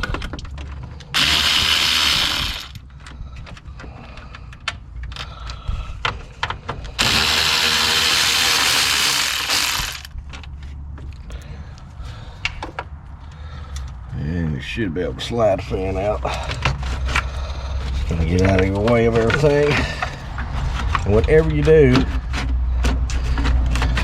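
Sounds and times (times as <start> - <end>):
handling clicks and knocks: 0.0 - 1.2, 2.7 - 7.0, 16.2 - 24.0
power tool running: 1.2 - 2.8, 7.0 - 10.1.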